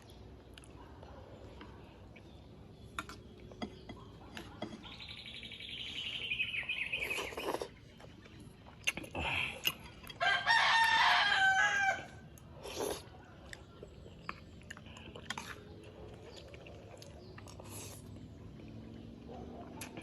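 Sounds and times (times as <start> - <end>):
rooster crowing: 10.2 - 12.2.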